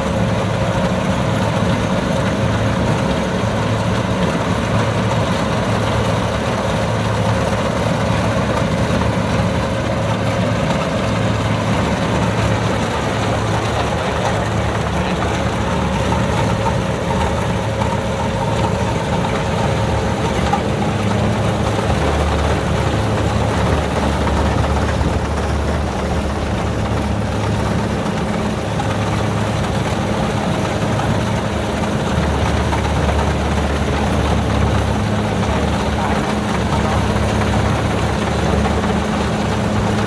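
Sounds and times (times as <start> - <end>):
diesel engine droning: 0.0 - 40.0.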